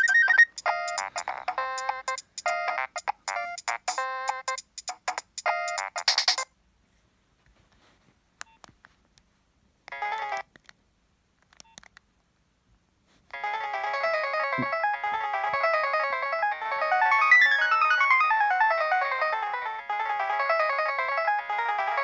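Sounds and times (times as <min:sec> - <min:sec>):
mobile phone ringtone melodies: 0:00.0 - 0:06.5, 0:13.4 - 0:22.0.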